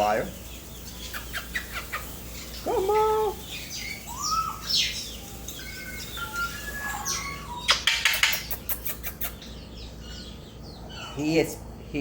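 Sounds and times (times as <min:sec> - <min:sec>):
parrot chirps and whistles: 0:03.5 - 0:09.5.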